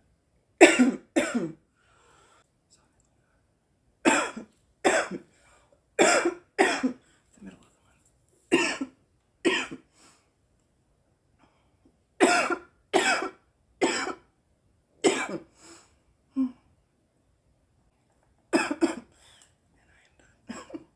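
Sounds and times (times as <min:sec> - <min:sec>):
young woman coughing: 0:00.6 - 0:01.6, 0:04.1 - 0:05.2, 0:06.0 - 0:07.0, 0:08.5 - 0:09.8, 0:12.2 - 0:14.2, 0:15.0 - 0:15.5, 0:18.5 - 0:19.1, 0:20.5 - 0:20.9.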